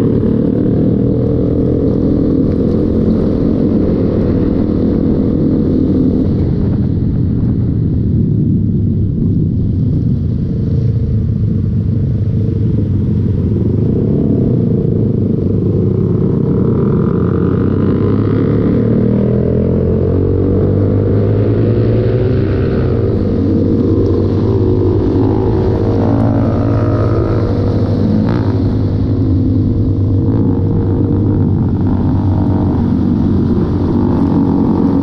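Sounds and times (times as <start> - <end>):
motorcycle engine running: 0.0 - 35.0
wind rumble on microphone: 0.0 - 35.0.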